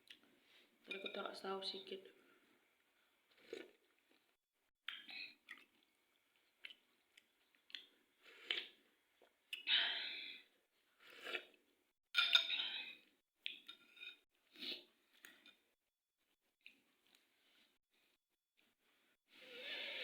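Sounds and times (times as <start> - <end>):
person chewing noodles: 3.2 - 4.3, 4.9 - 9.7.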